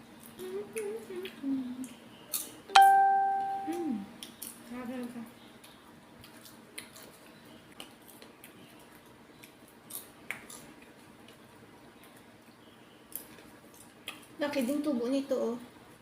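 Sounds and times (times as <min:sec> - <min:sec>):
low room hum: 0:00.0 - 0:16.0.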